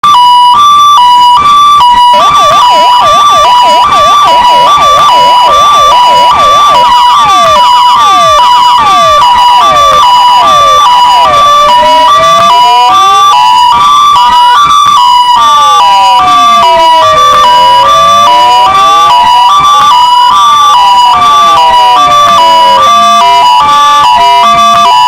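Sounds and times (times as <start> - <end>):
two-tone hi-lo siren: 0.0 - 25.0
yelping siren sweeps: 0.0 - 25.0.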